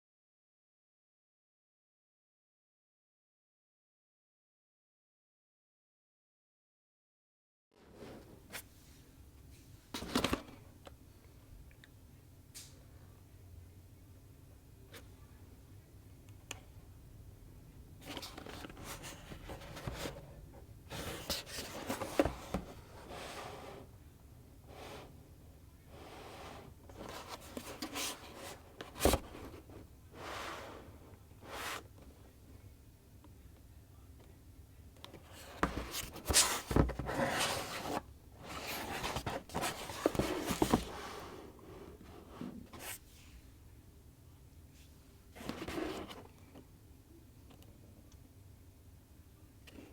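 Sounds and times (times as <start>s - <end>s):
packaging rustling and scraping: 20.9s - 23.9s, 35.3s - 43.0s.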